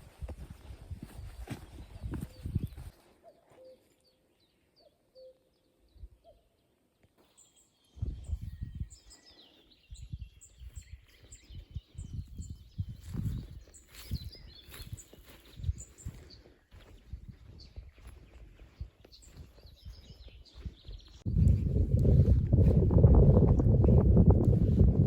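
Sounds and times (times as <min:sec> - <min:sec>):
footsteps rustling: 0:00.0 - 0:04.0, 0:13.0 - 0:25.0
small birds chirping: 0:00.2 - 0:24.9.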